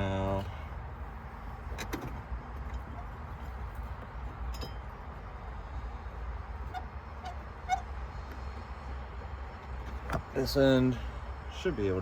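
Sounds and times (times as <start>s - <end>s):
faint metallic clinks: 4.4s - 5.1s.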